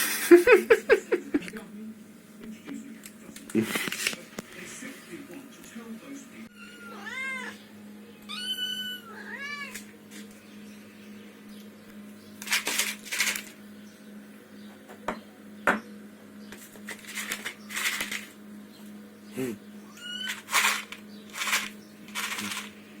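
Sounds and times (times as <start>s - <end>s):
steady low hum: 0.0s - 6.5s
cat meowing: 6.5s - 7.6s, 8.3s - 9.9s, 19.8s - 20.4s.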